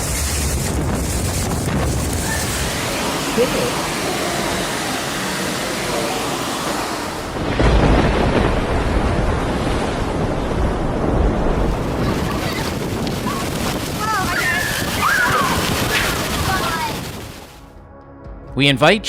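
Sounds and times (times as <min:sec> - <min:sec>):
steady rushing noise: 0:00.0 - 0:17.7
deep thunder rumble: 0:07.2 - 0:17.6.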